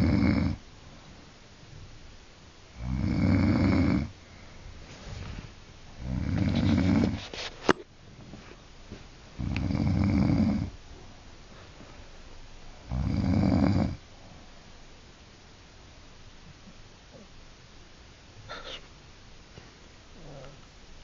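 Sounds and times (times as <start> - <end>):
woman snoring: 0.0 - 0.6, 2.8 - 4.1, 6.0 - 7.2, 9.4 - 10.7, 12.9 - 14.0
quiet breathing: 3.4 - 7.7, 8.3 - 14.9, 18.4 - 20.7.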